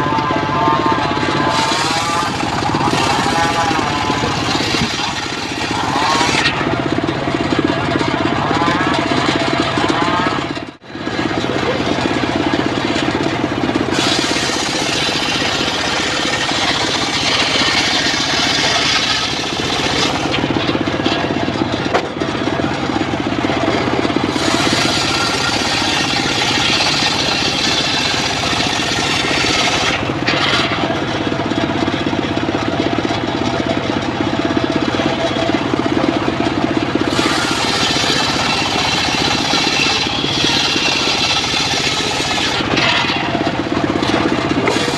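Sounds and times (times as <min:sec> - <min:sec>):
sawmill engine drone: 0:00.0 - 0:44.9
saw blade ripping through timber: 0:01.5 - 0:06.7, 0:13.9 - 0:20.5, 0:24.3 - 0:30.8, 0:37.0 - 0:43.4, 0:44.2 - 0:44.9.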